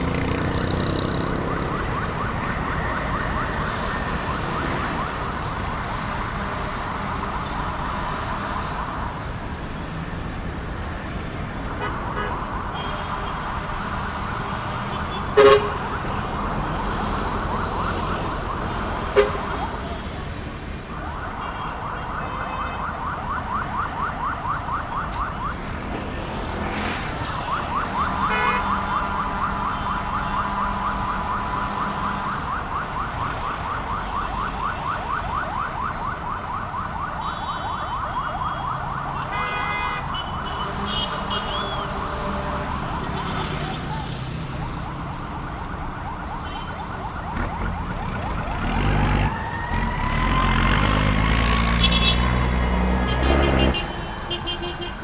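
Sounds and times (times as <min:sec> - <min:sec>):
siren yelping: 0:00.0 - 0:05.9, 0:11.4 - 0:39.3, 0:41.5 - 0:55.0
street traffic: 0:00.0 - 0:55.0.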